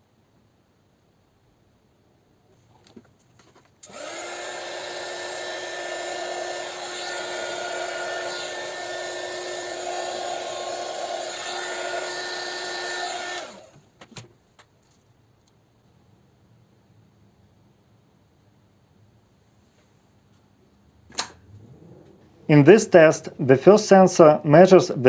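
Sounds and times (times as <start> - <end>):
small electric motor whirring: 3.8 - 13.8.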